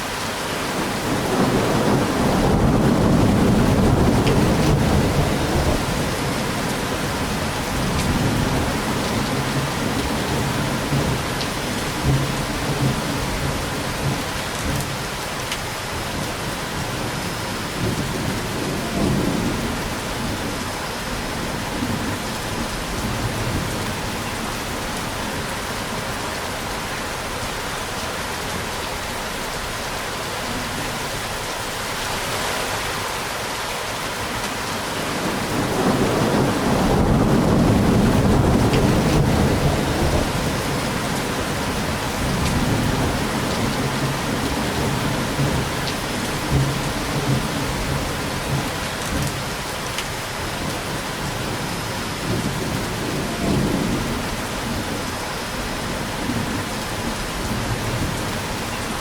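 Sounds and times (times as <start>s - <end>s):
heavy rain falling: 0.0s - 59.0s
thunder rumbling: 0.7s - 15.1s, 16.2s - 26.0s, 35.1s - 49.5s, 50.4s - 59.0s.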